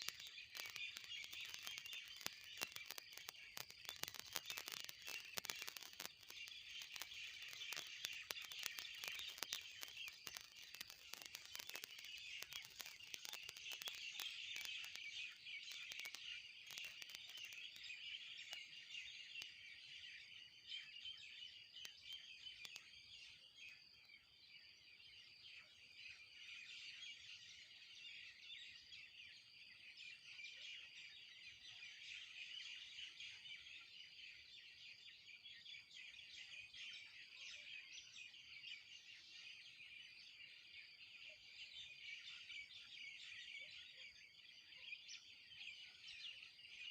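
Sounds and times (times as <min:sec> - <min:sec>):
faint clicks: 0:00.0 - 0:19.7, 0:21.7 - 0:24.1
small birds chirping: 0:00.0 - 0:46.9.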